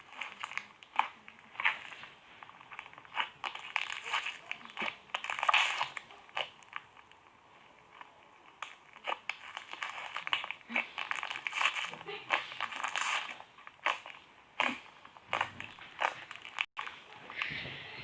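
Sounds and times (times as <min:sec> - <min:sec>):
slime squishing and crackling: 0:00.0 - 0:18.0.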